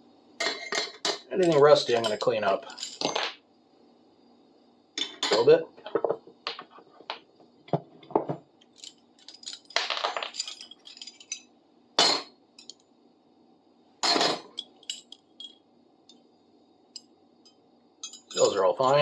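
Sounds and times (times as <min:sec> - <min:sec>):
metal hand tools clinking: 0:00.4 - 0:03.2, 0:08.7 - 0:11.4, 0:14.1 - 0:15.6, 0:18.0 - 0:19.0.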